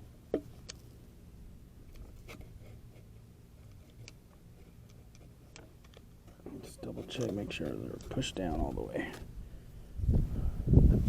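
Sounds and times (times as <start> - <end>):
small parts handled by hand: 0.3 - 1.0, 1.8 - 9.4.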